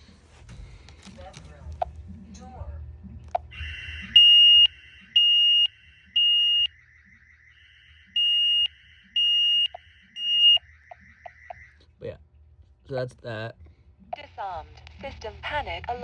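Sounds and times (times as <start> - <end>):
burglar alarm high-pitched beeps: 3.4 - 11.8
warbling siren tone: 3.4 - 11.8.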